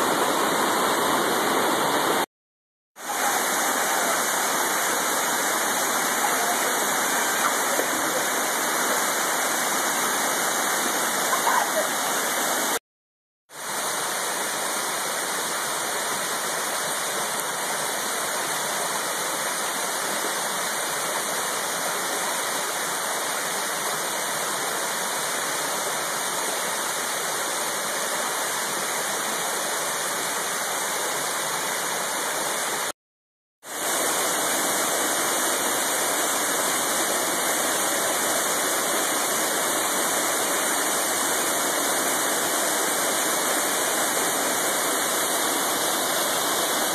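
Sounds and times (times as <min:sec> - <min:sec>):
waterfall rushing: 0:00.0 - 0:02.3, 0:03.0 - 0:12.8, 0:33.7 - 0:46.9.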